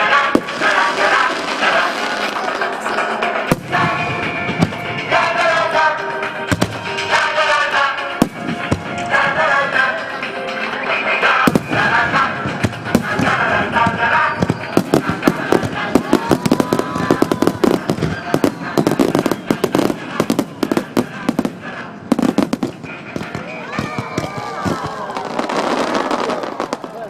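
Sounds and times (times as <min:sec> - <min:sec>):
fireworks bangs and crackles: 0:00.0 - 0:27.0
music from loudspeakers: 0:00.0 - 0:27.0
whistling firework shell: 0:13.1 - 0:21.2.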